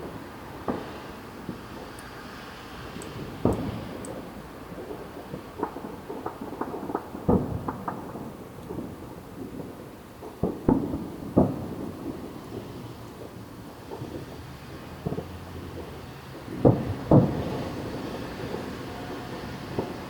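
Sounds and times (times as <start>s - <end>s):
small firework pops: 0.0s - 2.2s, 2.9s - 20.0s
fireworks bangs and booms: 0.0s - 20.0s.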